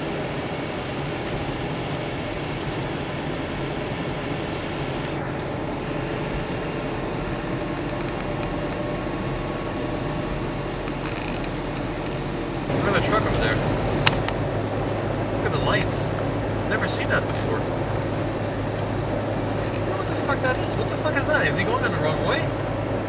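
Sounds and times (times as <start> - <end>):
car engine hum: 0.0 - 23.0
defroster fan blowing: 0.0 - 23.0
tyre and road noise: 4.8 - 23.0.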